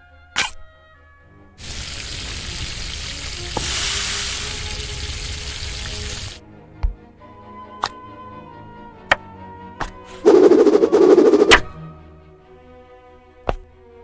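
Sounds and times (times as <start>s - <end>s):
quiet background music: 0.0s - 1.6s, 6.4s - 14.0s
steady hiss: 1.6s - 6.4s.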